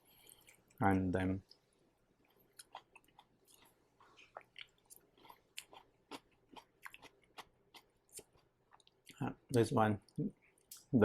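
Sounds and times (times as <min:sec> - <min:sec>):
person chewing food: 0:00.0 - 0:00.8, 0:01.4 - 0:09.2.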